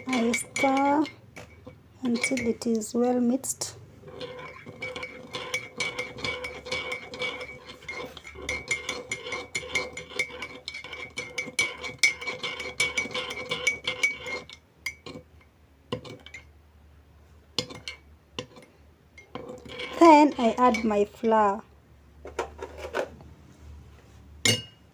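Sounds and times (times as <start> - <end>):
spoon clinking in a mug: 0.0 - 3.2, 4.2 - 15.2, 17.6 - 20.9, 24.4 - 24.8.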